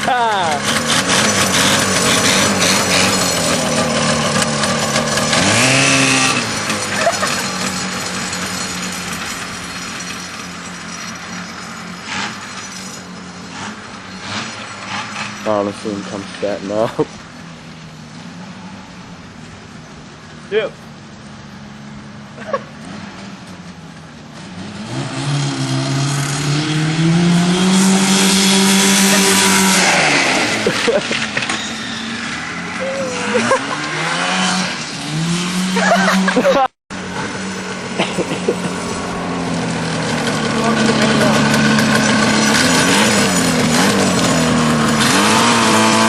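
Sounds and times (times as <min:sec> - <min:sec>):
snowmobile engine running: 0:00.0 - 0:11.3, 0:25.6 - 0:31.4, 0:32.5 - 0:46.0.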